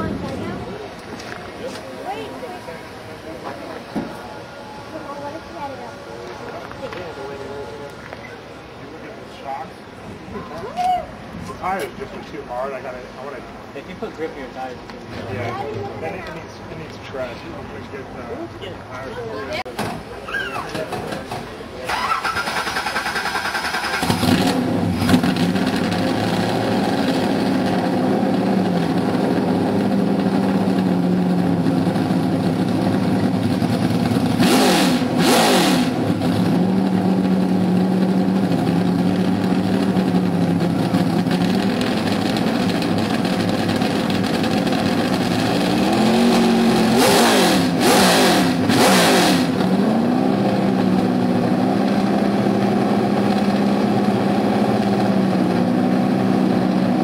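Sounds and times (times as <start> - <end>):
car engine idling and revving: 20.8 - 57.0.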